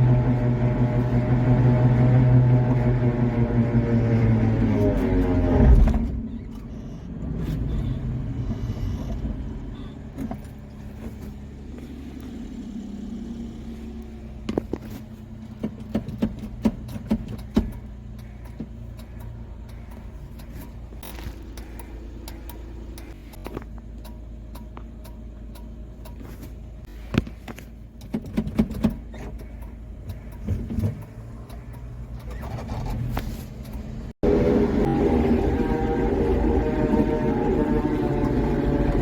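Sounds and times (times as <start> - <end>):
truck engine running at low revs: 0.0 - 39.0.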